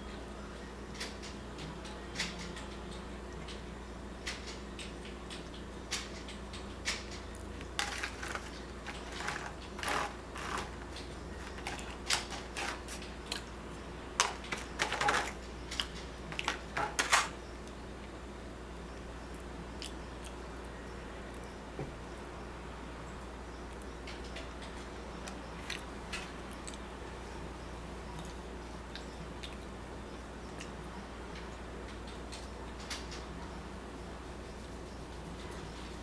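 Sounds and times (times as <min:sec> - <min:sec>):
eating sounds: 0:14.2 - 0:16.8.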